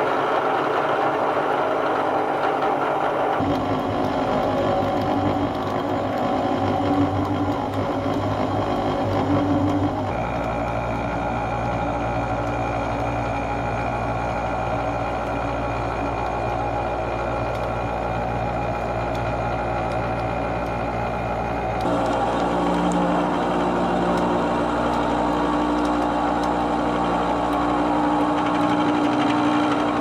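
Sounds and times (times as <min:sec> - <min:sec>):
milling machine cutting steel: 0:00.0 - 0:03.6, 0:13.6 - 0:30.0
smooth machine hum: 0:00.0 - 0:30.0.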